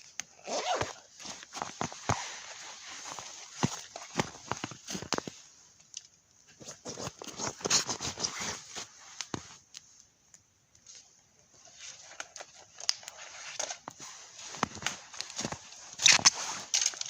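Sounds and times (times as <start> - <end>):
crunching and crinkling handling: 11.6 - 17.0.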